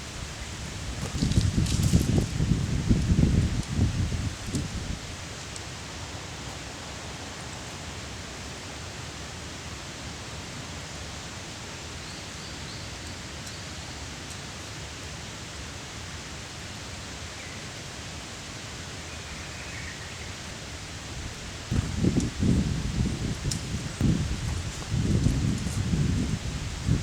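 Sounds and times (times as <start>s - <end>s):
steady rushing outdoor noise: 20.3s - 27.0s.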